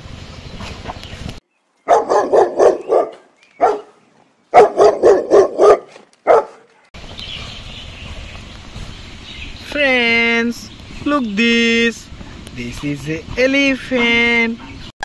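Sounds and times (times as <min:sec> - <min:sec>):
dog barking: 0:01.9 - 0:06.9.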